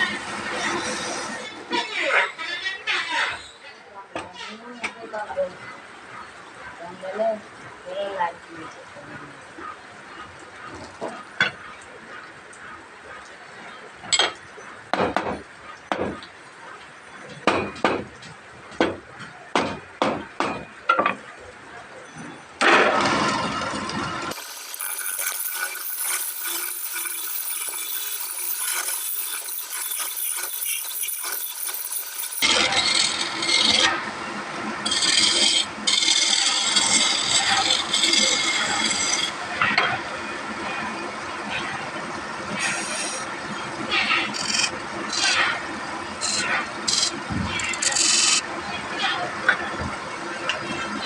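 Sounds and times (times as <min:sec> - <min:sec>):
wood scraping and rasping: 0:24.3 - 0:34.0, 0:34.9 - 0:39.4.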